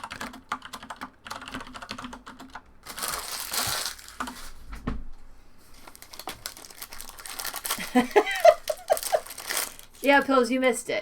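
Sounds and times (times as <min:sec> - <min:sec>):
wrapper crinkling: 0:02.8 - 0:04.6, 0:05.7 - 0:10.3.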